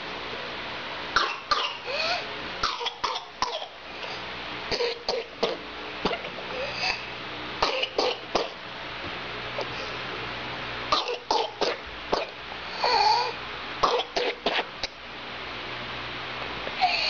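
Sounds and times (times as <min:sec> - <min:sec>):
high-pitched in-breaths: 0:01.8 - 0:02.3, 0:16.8 - 0:17.0
person coughing: 0:04.7 - 0:07.0, 0:07.6 - 0:08.6.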